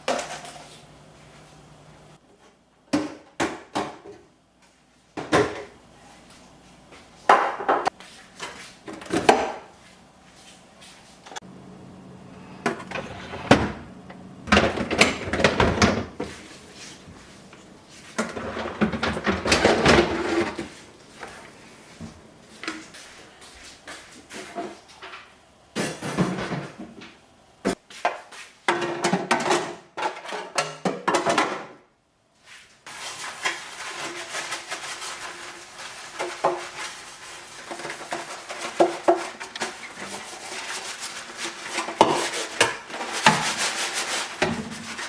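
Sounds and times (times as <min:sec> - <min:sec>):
containers clattering and rustling: 0:00.0 - 0:00.9, 0:18.1 - 0:21.4, 0:32.9 - 0:45.0
drawers and doors opening and closing: 0:12.3 - 0:16.4, 0:18.2 - 0:20.8.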